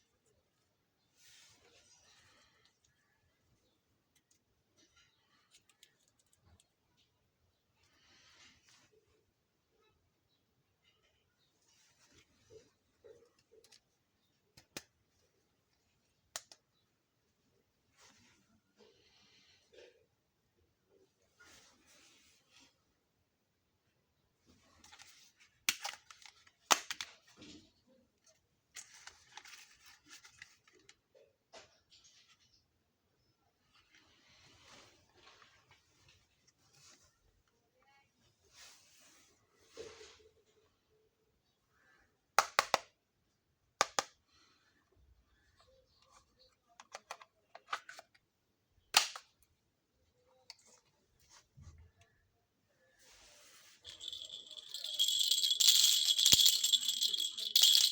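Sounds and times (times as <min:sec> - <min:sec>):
plastic toy pieces rustling: 0:53.8 - 0:57.9.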